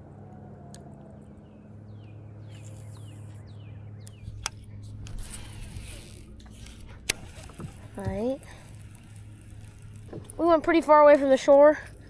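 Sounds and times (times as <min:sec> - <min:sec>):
steady low hum: 0:00.0 - 0:12.0
small birds chirping: 0:01.3 - 0:04.8.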